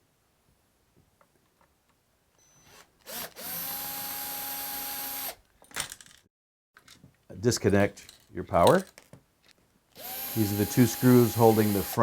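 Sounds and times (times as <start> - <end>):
power drill whining: 2.4 - 5.4, 10.0 - 12.0.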